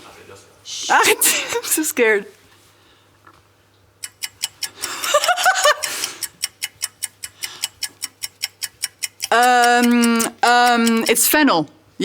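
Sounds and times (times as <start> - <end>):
woman giggling: 0.9 - 2.0, 4.8 - 6.3
rapid clock ticking: 4.0 - 11.5.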